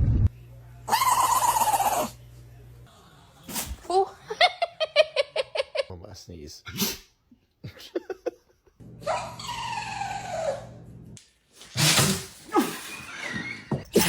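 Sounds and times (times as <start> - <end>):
dog sneezing: 11.6 - 13.0.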